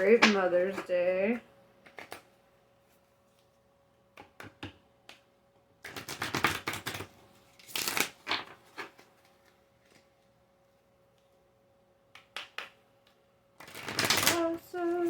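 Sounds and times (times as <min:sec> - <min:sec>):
cards being shuffled: 0:05.8 - 0:10.3, 0:13.6 - 0:15.0
rapid card flutter: 0:05.9 - 0:09.1, 0:13.6 - 0:14.5.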